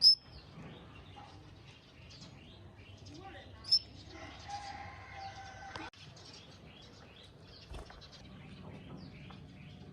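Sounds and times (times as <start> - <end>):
small bird chirping: 0.0 - 4.6.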